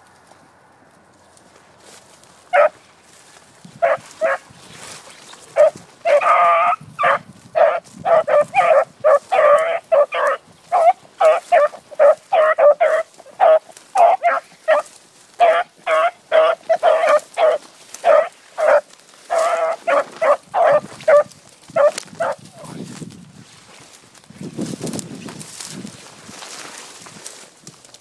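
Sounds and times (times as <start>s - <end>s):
dog barking: 2.5s - 2.8s, 3.8s - 4.4s, 5.6s - 22.4s.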